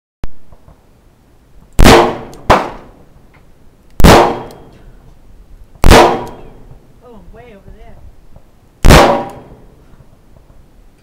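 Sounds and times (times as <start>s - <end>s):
handgun shots: 1.8s - 2.8s, 4.0s - 4.7s, 5.8s - 6.5s, 8.8s - 9.5s.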